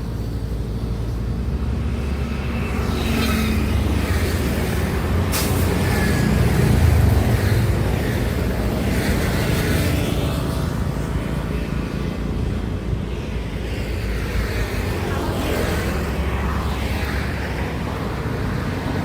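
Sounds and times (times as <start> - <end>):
highway traffic rumble: 0.0 - 19.0
vehicles passing by: 0.0 - 19.0.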